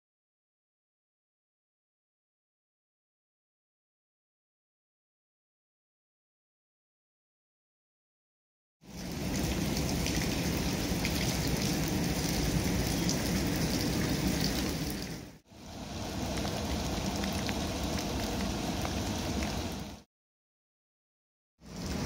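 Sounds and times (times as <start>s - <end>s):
raindrops pattering: 8.8s - 20.0s
steady rain falling: 8.8s - 20.0s, 21.6s - 22.0s.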